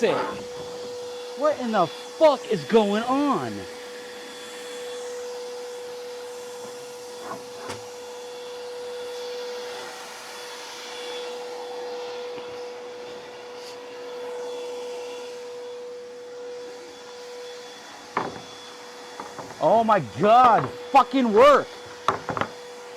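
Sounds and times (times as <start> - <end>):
table saw whining: 0.0 - 10.2, 15.6 - 22.9
light knocks: 18.2 - 18.5, 19.2 - 19.6, 20.4 - 20.9, 21.6 - 22.6.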